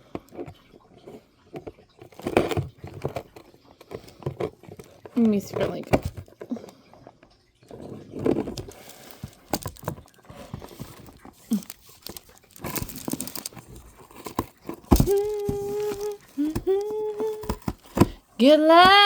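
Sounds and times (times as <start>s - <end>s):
packaging crinkling and tearing: 8.2s - 19.0s.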